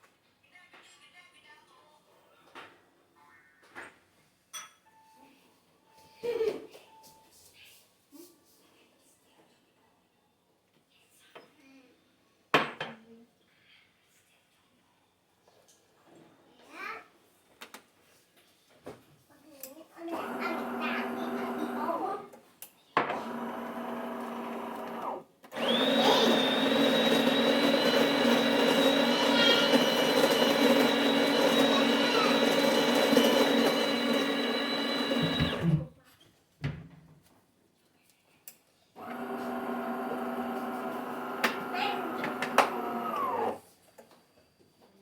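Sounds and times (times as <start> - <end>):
coffee machine pump hum: 20.2 - 22.0, 25.6 - 35.9, 39.0 - 43.6.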